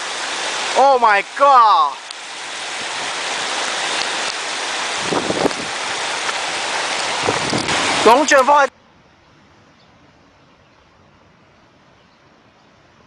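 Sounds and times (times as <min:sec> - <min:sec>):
heavy rain in strong wind: 0:00.0 - 0:09.1.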